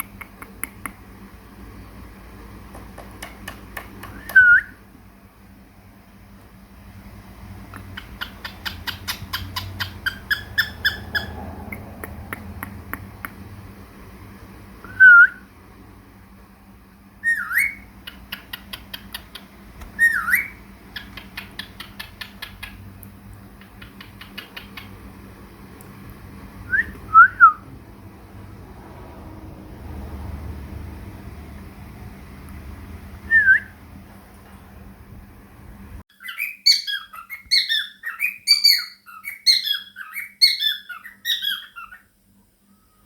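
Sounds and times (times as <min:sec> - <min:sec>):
birds clicking chatter: 0:07.7 - 0:12.5, 0:18.0 - 0:19.6, 0:20.2 - 0:25.0
birds whistling: 0:07.8 - 0:11.9, 0:17.2 - 0:19.2, 0:19.9 - 0:22.9, 0:26.7 - 0:27.6, 0:33.2 - 0:33.8, 0:36.1 - 0:42.1.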